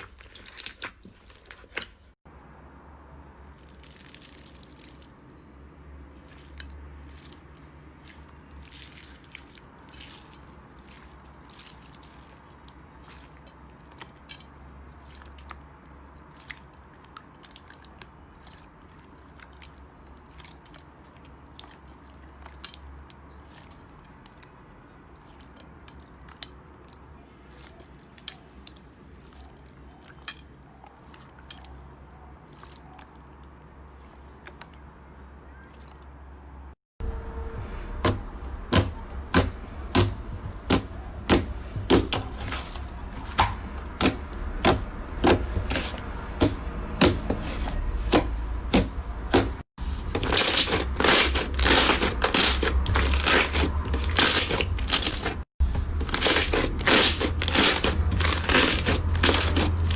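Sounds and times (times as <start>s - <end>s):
slime squished by hand: 0.0s - 2.1s, 3.4s - 5.5s.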